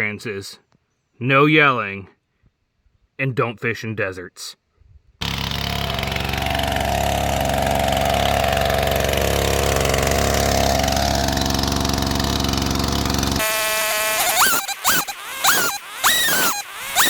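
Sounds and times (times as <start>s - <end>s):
chainsaw idling: 5.2s - 17.0s
short rising squeak: 13.4s - 17.0s.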